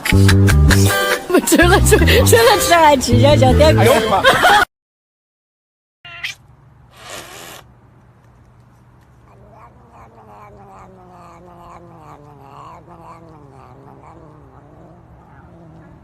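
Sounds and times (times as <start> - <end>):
cat yowling: 6.1 - 6.4, 9.2 - 16.0.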